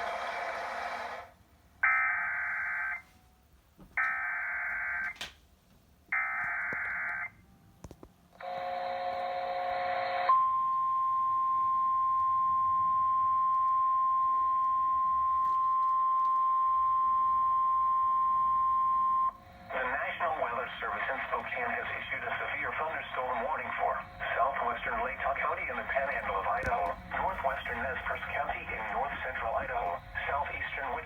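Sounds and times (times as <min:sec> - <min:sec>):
digital data bursts: 0:19.4 - 0:26.6, 0:27.2 - 0:31.0.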